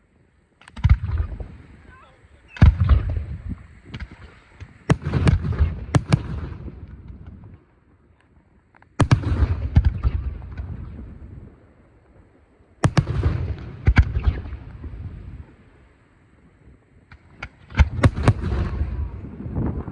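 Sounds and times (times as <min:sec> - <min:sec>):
fireworks shells bursting with bangs: 0:02.5 - 0:07.5, 0:08.9 - 0:11.2, 0:12.8 - 0:15.6, 0:17.1 - 0:19.8.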